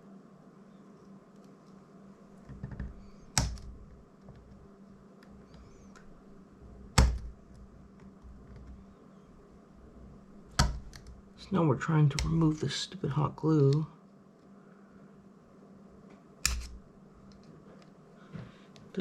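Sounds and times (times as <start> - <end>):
steady low hum: 0.0 - 19.0
sharp knocks: 7.0 - 7.4, 10.6 - 11.1.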